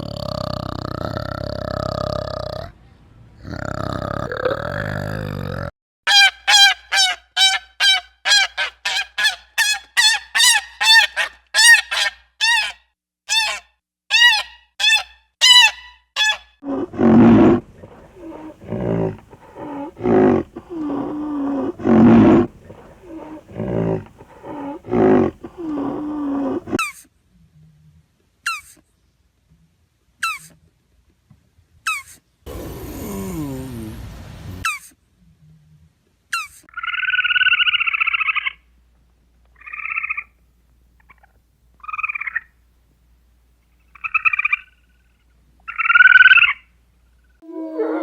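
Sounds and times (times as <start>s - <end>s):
animal calls: 6.1s - 27.0s.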